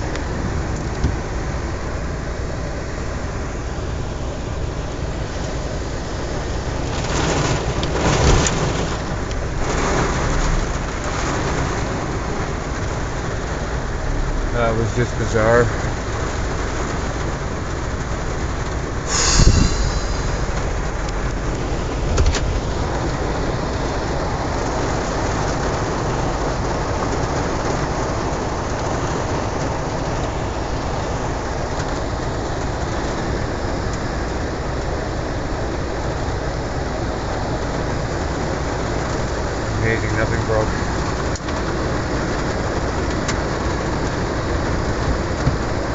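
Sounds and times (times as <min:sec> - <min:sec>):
heavy rain on vehicle roof: 0:00.0 - 0:45.9
thunder crack and rumble: 0:06.1 - 0:35.1.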